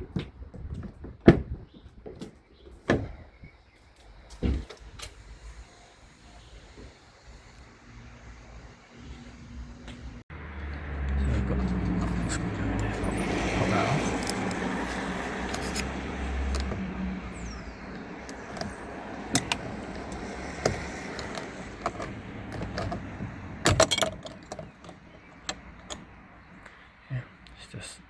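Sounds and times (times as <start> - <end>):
metal parts and tools clicking: 13.7 - 26.6.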